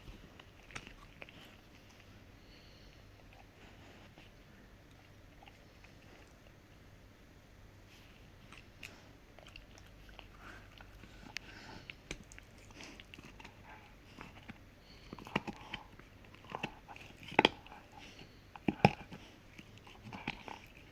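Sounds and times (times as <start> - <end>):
dog gnawing a hard chew: 0.0 - 2.2, 8.0 - 20.9.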